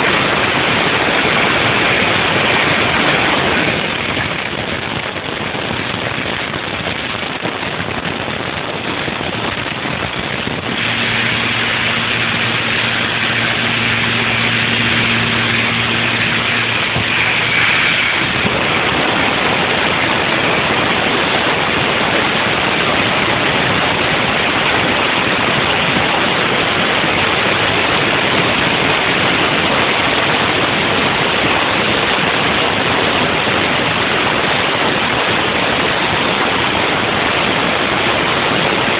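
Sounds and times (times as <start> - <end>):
low steady hum: 0.0 - 21.4
milling machine rushing hiss: 10.6 - 19.4.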